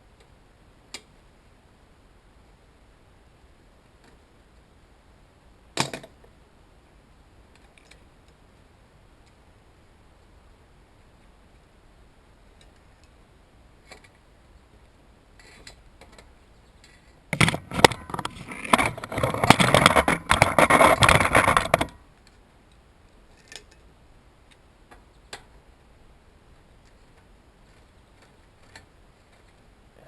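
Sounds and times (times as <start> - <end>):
metal clattering and rattling: 17.4 - 22.0.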